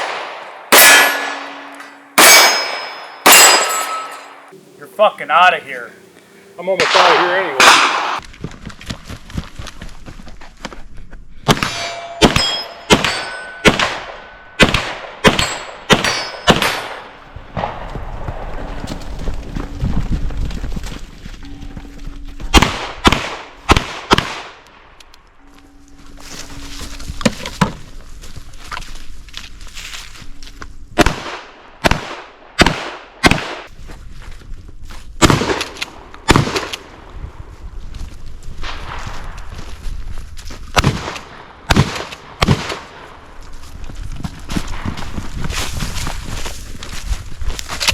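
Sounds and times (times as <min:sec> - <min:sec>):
gunshots: 0:00.0 - 0:04.1, 0:06.8 - 0:08.2, 0:11.5 - 0:18.4, 0:22.5 - 0:24.6, 0:31.0 - 0:33.7, 0:35.2 - 0:36.9, 0:40.8 - 0:43.1
steel target clanging: 0:00.7 - 0:04.5, 0:11.6 - 0:14.4, 0:15.3 - 0:16.9.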